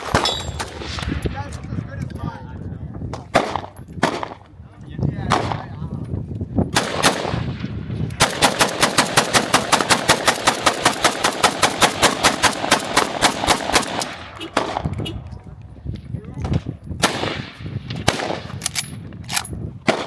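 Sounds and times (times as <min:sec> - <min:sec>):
gunshots: 0:00.0 - 0:01.2, 0:03.3 - 0:04.4, 0:05.3 - 0:05.7, 0:06.7 - 0:15.0, 0:17.0 - 0:18.6
rapid gunfire: 0:06.8 - 0:07.6, 0:08.2 - 0:14.8, 0:17.0 - 0:18.6.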